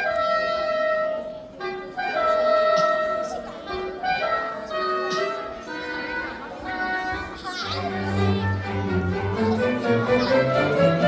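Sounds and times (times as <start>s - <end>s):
chamber ensemble accompaniment: 0.0s - 11.0s
woodwind melody: 0.0s - 11.0s.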